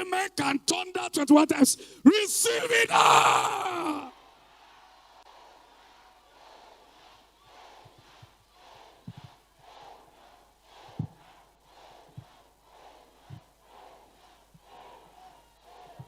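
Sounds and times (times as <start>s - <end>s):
congregation shouting: 2.0s - 4.1s.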